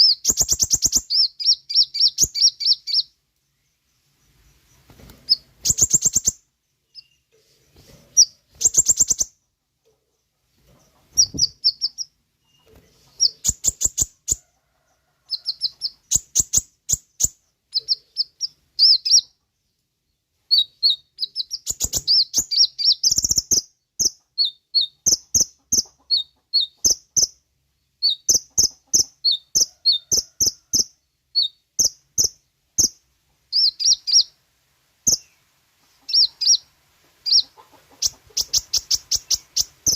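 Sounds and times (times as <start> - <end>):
bird chattering trills: 0.0 - 3.1, 5.3 - 6.4, 36.0 - 39.9.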